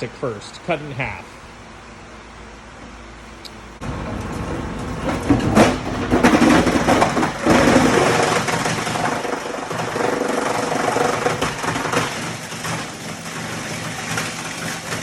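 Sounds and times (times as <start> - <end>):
rotor running: 3.6 - 15.0
granulator chopping plastic: 3.8 - 15.0.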